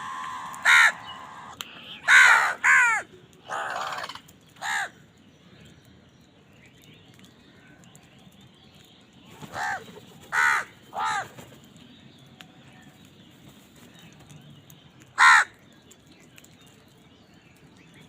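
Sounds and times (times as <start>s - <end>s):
crows cawing: 0.0s - 5.0s, 9.5s - 11.3s, 15.2s - 15.6s.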